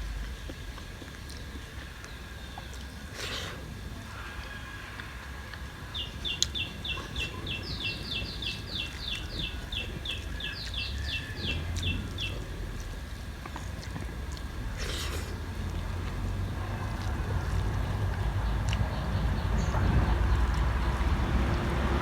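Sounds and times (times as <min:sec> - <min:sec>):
low rumble: 0:00.0 - 0:02.6
bird chirping: 0:05.9 - 0:12.6.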